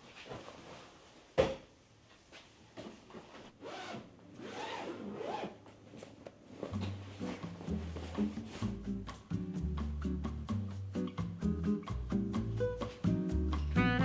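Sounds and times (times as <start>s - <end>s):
soft music: 5.8s - 14.0s.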